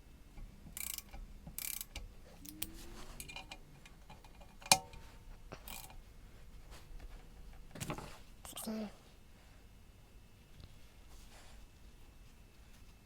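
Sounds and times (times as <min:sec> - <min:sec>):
ratchet clicking: 0:00.8 - 0:02.6, 0:05.7 - 0:06.0.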